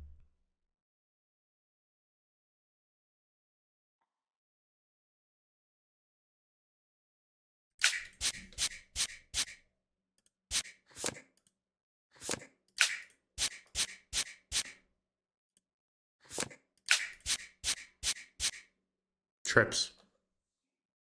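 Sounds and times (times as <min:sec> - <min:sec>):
card snap sound effects: 0:07.8 - 0:08.8, 0:12.2 - 0:14.8, 0:16.3 - 0:18.6.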